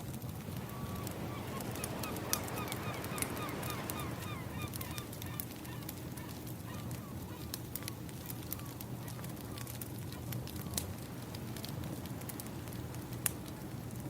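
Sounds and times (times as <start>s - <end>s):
wood fire crackling: 0.0s - 14.0s
waves washing: 0.3s - 5.4s.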